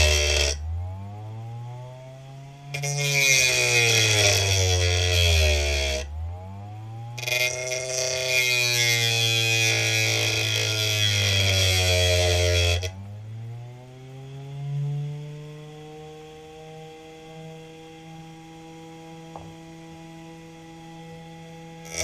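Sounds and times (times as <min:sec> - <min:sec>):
rock grinding on sandpaper disc: 0:00.0 - 0:00.6, 0:02.7 - 0:06.1, 0:07.2 - 0:13.0, 0:21.7 - 0:22.0
spinning motor whine: 0:00.0 - 0:22.0.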